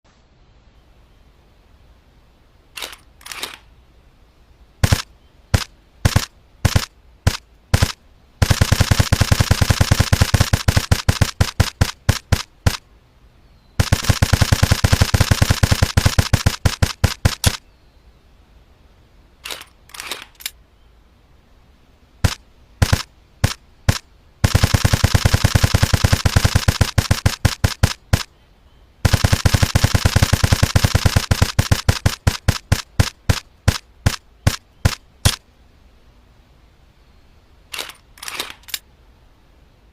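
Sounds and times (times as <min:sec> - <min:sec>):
airsoft gun firing: 0:04.8 - 0:12.8, 0:13.8 - 0:17.6, 0:22.2 - 0:28.3, 0:29.0 - 0:35.4.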